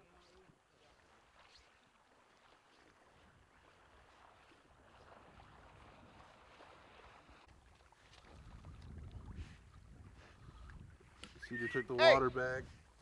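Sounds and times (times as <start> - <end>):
water splashing and sloshing: 0.0 - 13.0
wind rumbling on microphone: 3.1 - 13.0.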